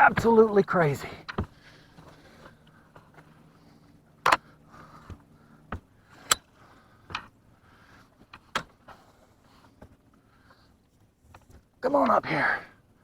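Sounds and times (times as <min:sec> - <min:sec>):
faint low hum: 0:00.0 - 0:13.0
fishing gear clicks and knocks: 0:04.2 - 0:07.4.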